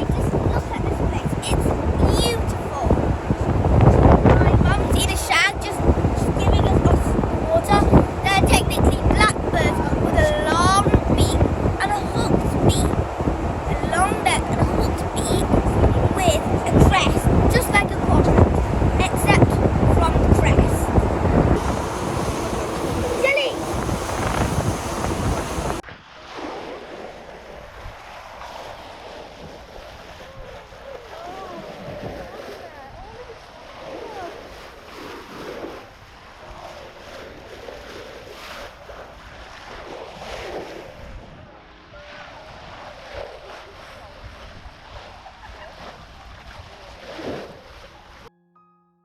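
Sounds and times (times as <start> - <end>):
ferry rumbling: 0.0 - 25.8
wind buffeting microphone: 0.0 - 25.8, 27.6 - 48.3
soft piano music: 0.0 - 28.9, 41.4 - 45.7, 47.6 - 49.0
sea noise: 0.0 - 48.3.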